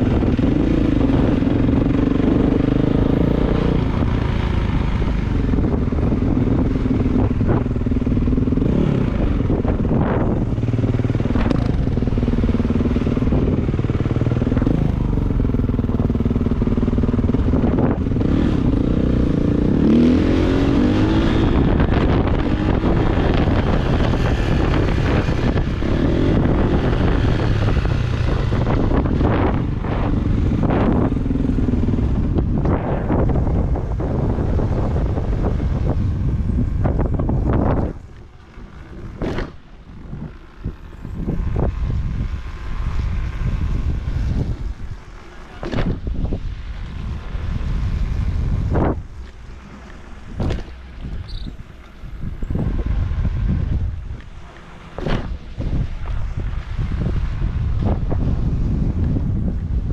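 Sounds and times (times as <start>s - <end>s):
dirt bike engine revving: 0.0s - 35.9s.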